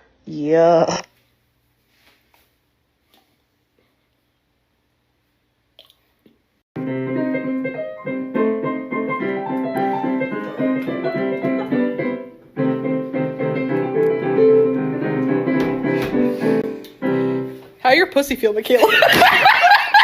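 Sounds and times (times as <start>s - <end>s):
piano sustained notes: 6.8s - 17.8s.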